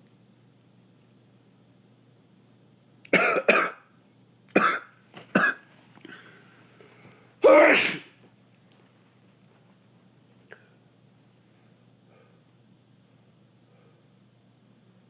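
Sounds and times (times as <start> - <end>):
man sneezing: 7.4 - 8.2.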